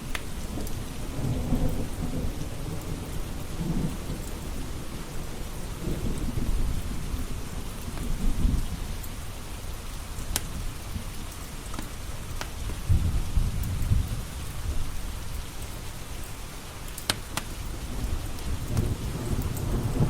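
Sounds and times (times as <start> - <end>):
thunder rumble: 0.0 - 9.4, 12.5 - 15.6, 17.5 - 20.0
steady rain: 0.0 - 20.0
wood fire crackling: 0.0 - 20.0.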